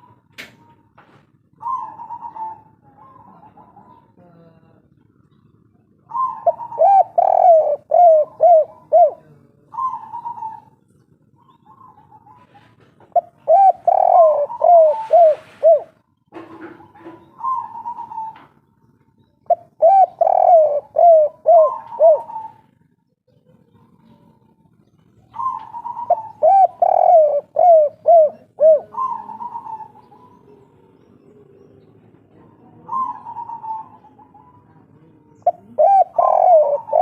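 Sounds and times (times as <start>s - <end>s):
dove cooing: 0.0s - 0.9s, 1.5s - 37.0s.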